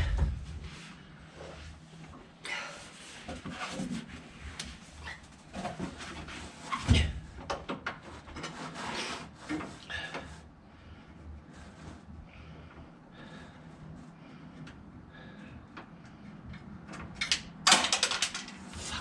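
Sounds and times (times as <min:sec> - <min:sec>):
hands and tools handling noise: 0:15.7 - 0:19.0.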